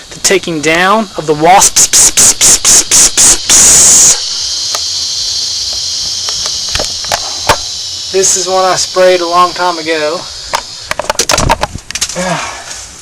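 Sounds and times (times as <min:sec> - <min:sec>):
night insects high hiss: 0:00.0 - 0:13.0
aerosol spray hissing: 0:01.6 - 0:10.9
faint clicks: 0:05.6 - 0:07.7.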